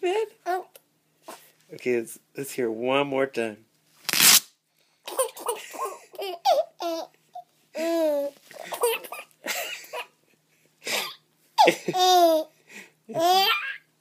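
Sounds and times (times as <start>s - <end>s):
baby laughing: 5.1s - 10.1s, 11.6s - 12.5s, 13.1s - 13.9s.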